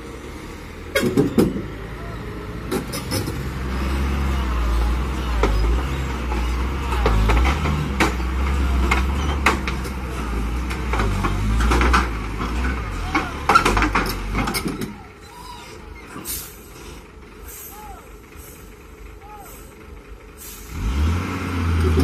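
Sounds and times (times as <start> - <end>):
diesel truck engine rumbling: 0.0 - 22.0
knocks and clanks: 0.9 - 1.7, 5.3 - 15.1.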